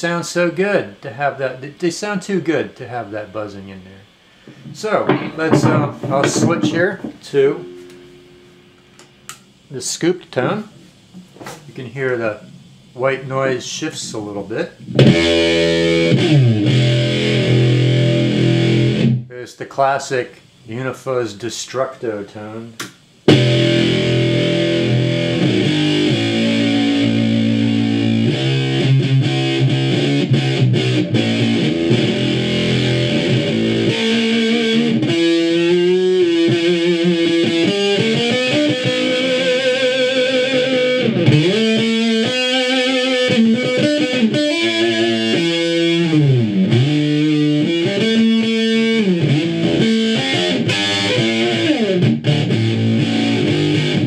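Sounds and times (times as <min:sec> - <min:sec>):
fuzz-distorted electric guitar: 0:04.0 - 0:09.4, 0:14.8 - 0:19.3, 0:23.3 - 0:54.0.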